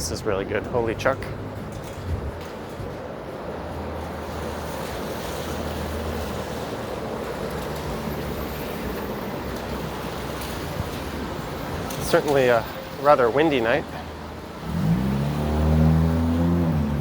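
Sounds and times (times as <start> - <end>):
wind blowing across microphone: 0.0 - 12.8.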